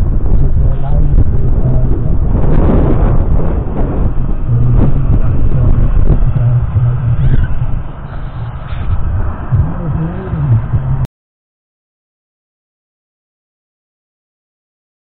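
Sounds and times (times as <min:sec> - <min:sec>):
tractor diesel engine running: 0:03.6 - 0:11.1.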